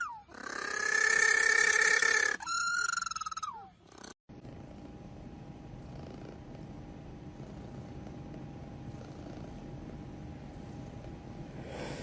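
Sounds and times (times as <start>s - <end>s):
high animal cries: 0.0s - 4.2s
cat purring: 3.9s - 12.0s.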